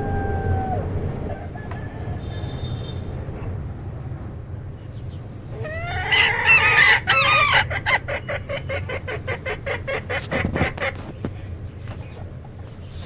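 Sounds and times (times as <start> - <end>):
rooster crowing: 0.0 - 3.3, 5.6 - 8.1
chicken clucking: 5.4 - 12.6.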